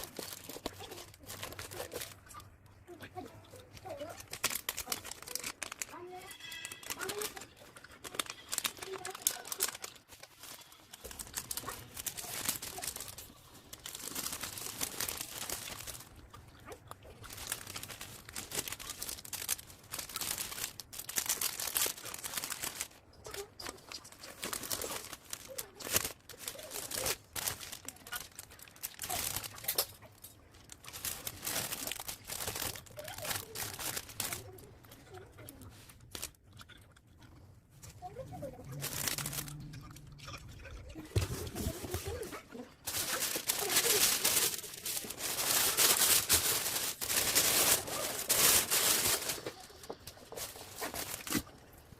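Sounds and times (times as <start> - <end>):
packing material crinkling: 0.0 - 37.2, 37.8 - 51.9.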